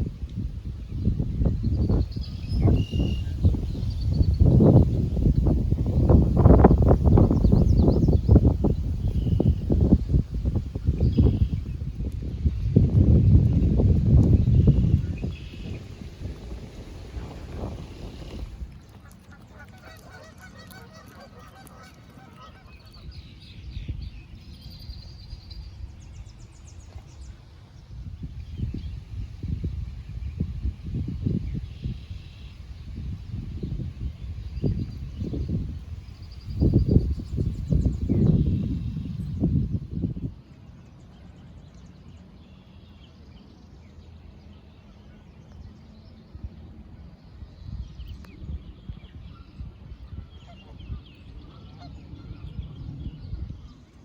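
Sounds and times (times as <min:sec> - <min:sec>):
low wind rumble: 0:00.0 - 0:54.0
birds chirping and trilling: 0:01.7 - 0:11.9, 0:17.2 - 0:26.4.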